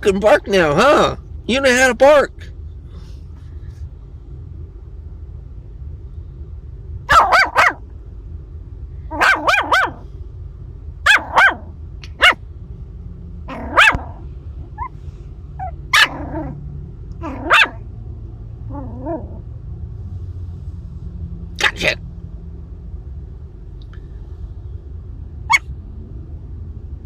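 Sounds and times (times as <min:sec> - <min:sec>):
puppy yapping: 0:07.1 - 0:07.8, 0:09.1 - 0:10.0, 0:11.0 - 0:12.4, 0:13.5 - 0:14.9, 0:15.6 - 0:16.6, 0:17.2 - 0:17.8, 0:25.5 - 0:25.7.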